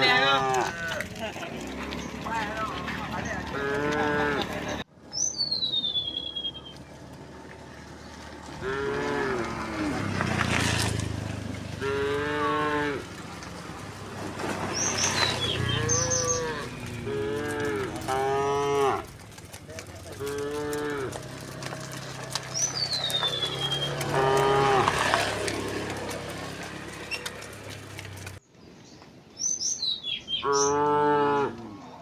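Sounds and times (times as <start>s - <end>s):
cattle mooing: 0.0s - 4.8s, 7.4s - 28.4s, 30.4s - 31.9s
small birds chirping: 5.0s - 10.3s, 11.3s - 30.9s.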